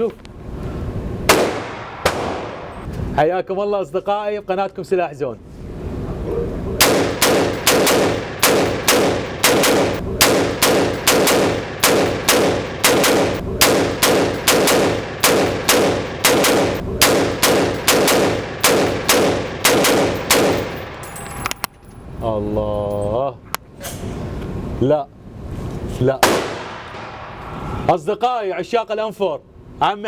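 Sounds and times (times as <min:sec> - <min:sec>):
rifle shots with ringing echo: 0:01.3 - 0:02.9, 0:06.8 - 0:21.5, 0:26.2 - 0:27.8.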